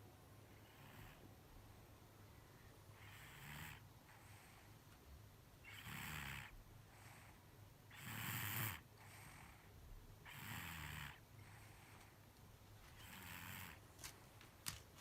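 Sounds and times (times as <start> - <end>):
baby snoring quietly: 0.5 - 1.3, 2.9 - 4.8, 5.6 - 12.2, 12.9 - 13.8.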